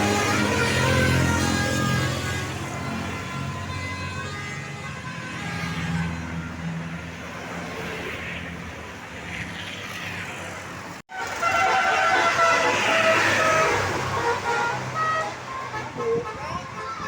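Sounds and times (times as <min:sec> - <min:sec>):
bus horn playing melody: 0:00.0 - 0:06.6, 0:11.1 - 0:17.0
vehicle engine rumble: 0:00.0 - 0:17.0.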